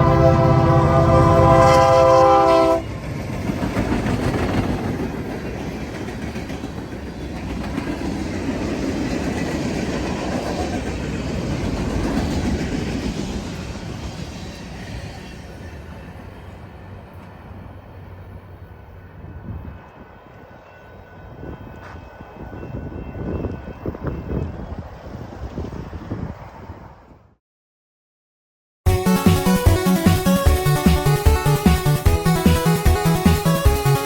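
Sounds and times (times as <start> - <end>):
train horn: 0.0 - 2.9
train rolling past on rails: 0.0 - 27.3, 28.9 - 34.0.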